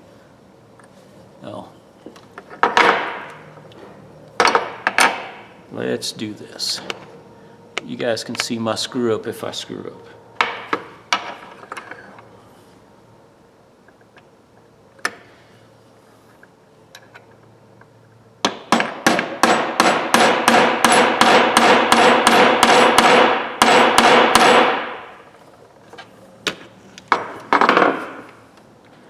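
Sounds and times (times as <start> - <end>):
hammer tapping metal punch: 18.4 - 24.7.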